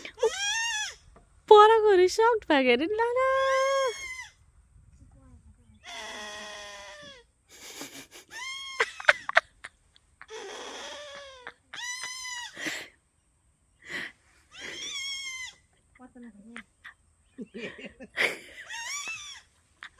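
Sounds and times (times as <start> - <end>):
goat bleating: 5.8 - 7.3.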